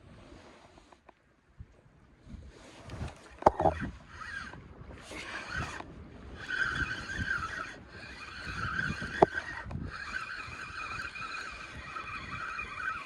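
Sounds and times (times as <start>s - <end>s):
fishing reel whirring: 3.2s - 13.0s.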